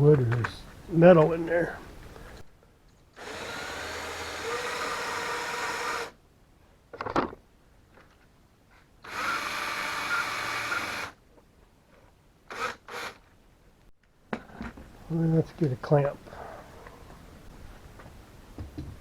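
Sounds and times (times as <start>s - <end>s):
cordless drill boring into wood: 3.2s - 6.2s, 9.0s - 11.2s, 12.5s - 13.2s.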